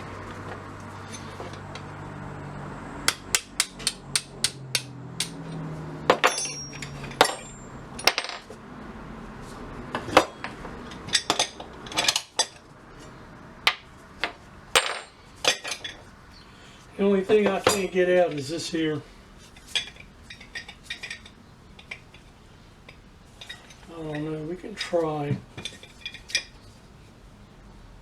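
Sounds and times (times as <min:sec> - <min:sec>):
metal parts tapped and clinking: 0:03.1 - 0:08.6, 0:09.9 - 0:12.7, 0:13.6 - 0:16.1, 0:17.3 - 0:18.5, 0:19.6 - 0:22.3, 0:22.9 - 0:26.6.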